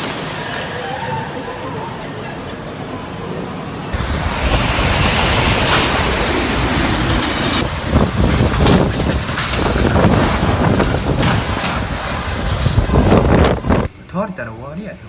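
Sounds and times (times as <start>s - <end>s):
gale wind buffeting microphone: 3.9s - 13.9s.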